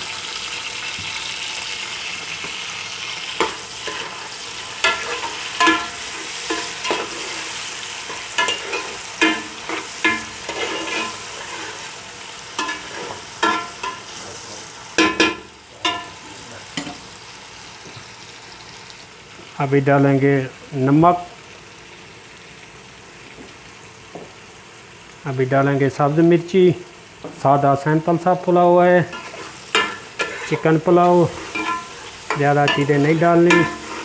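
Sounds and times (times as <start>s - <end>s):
food sizzling in hot oil: 0.0s - 34.0s
spoon clinking on pot: 4.8s - 7.0s, 31.5s - 31.9s, 33.5s - 33.8s.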